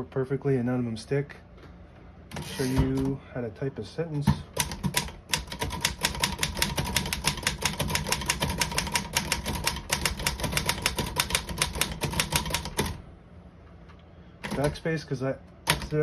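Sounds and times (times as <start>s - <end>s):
typewriter key strikes: 4.6s - 13.0s, 14.5s - 14.8s.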